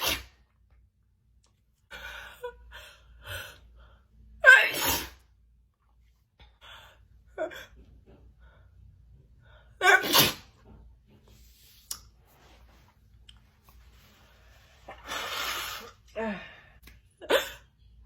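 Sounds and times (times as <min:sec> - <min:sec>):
woman sneezing: 0:04.4 - 0:05.2, 0:09.8 - 0:10.5.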